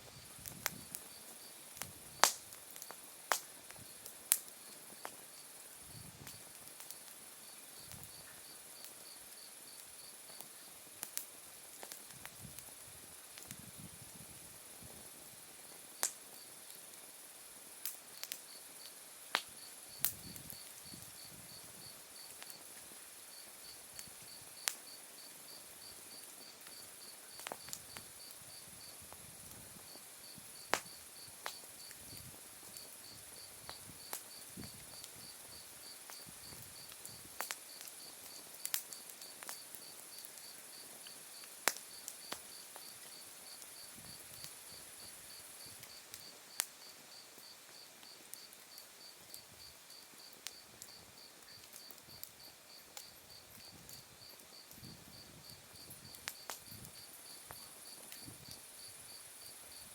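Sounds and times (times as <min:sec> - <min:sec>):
crickets pulsing chirp: 0:00.1 - 0:10.8, 0:12.3 - 0:59.9
wood fire crackling: 0:00.1 - 0:59.9
burning wood popping: 0:01.8 - 0:05.2, 0:24.0 - 0:46.8, 0:54.6 - 0:58.7
crickets trilling: 0:29.8 - 0:59.9.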